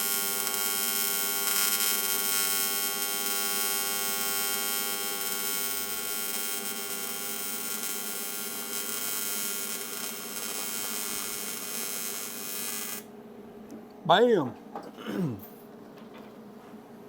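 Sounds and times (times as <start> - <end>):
welding arc buzzing: 0.0 - 13.1.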